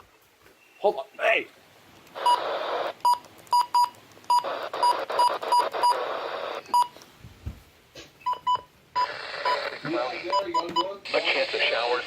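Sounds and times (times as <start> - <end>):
radio static hiss: 2.1 - 3.2, 4.3 - 7.0, 9.0 - 12.0.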